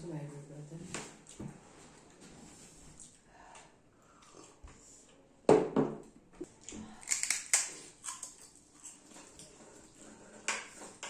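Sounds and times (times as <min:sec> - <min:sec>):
eating crunching and crackling: 0:06.5 - 0:11.0.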